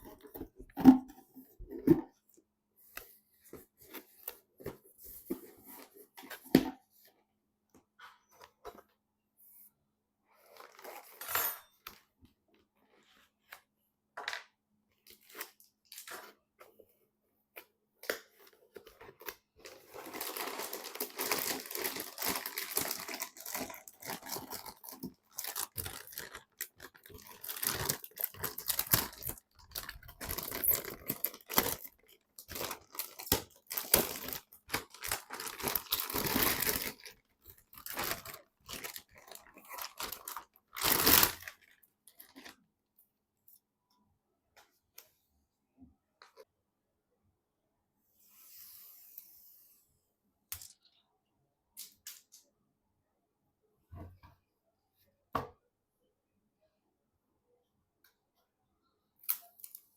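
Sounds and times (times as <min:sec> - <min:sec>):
plastic and paper crinkling: 0:18.7 - 0:42.6.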